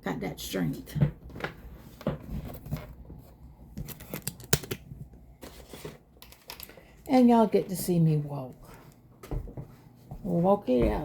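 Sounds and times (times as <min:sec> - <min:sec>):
packaging rustling and clicking: 0:03.8 - 0:06.9.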